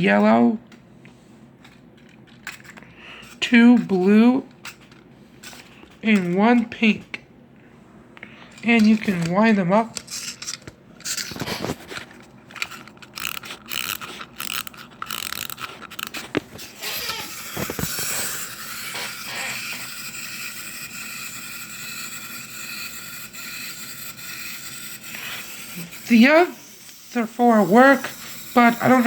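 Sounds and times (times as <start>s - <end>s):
winding key ratchet clicking: 12.5s - 27.2s
clockwork motor whirring: 12.6s - 29.0s.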